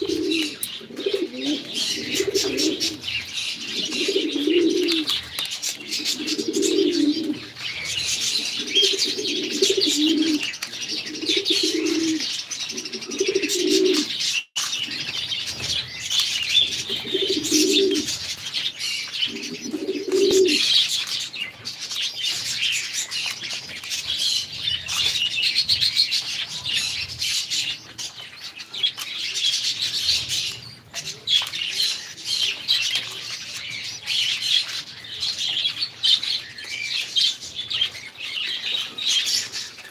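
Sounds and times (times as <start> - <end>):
pigeons cooing: 0.0 - 21.6
small cage birds chirping: 0.0 - 39.9.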